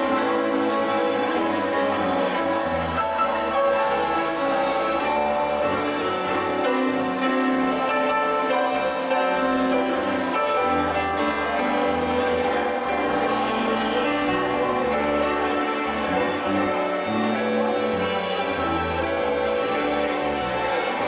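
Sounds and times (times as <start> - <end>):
slow instrumental music: 0.0 - 21.0.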